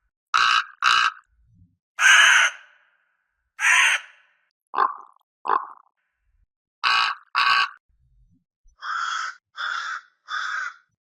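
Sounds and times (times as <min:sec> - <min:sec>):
crow cawing: 0:00.4 - 0:01.2, 0:02.0 - 0:02.9, 0:03.6 - 0:04.4, 0:06.8 - 0:07.8, 0:08.8 - 0:10.9.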